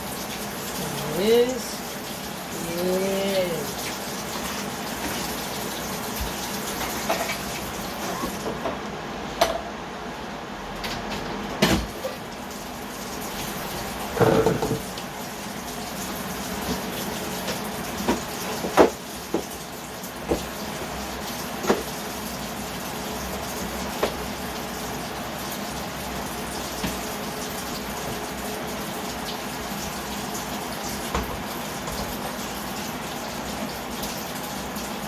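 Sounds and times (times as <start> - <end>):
watery cooking hiss: 0.0 - 8.3
pots and utensils clinking: 6.5 - 8.8, 14.1 - 15.0.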